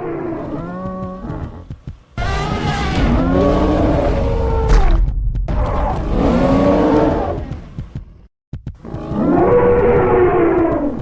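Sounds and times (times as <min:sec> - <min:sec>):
animal roar falling in pitch: 0:02.2 - 0:07.6
low rumble: 0:02.2 - 0:09.0.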